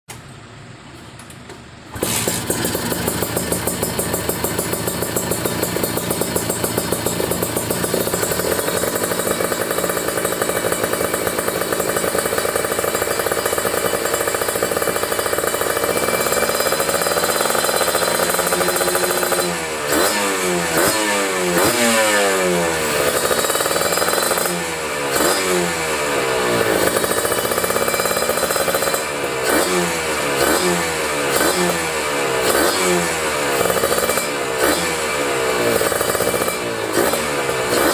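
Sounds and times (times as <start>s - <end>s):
motorcycle engine idling and revving: 0.1s - 37.9s.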